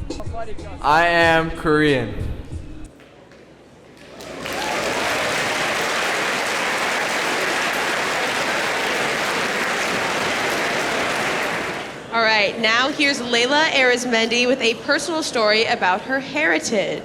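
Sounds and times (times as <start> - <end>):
audience applauding: 4.0 - 12.1.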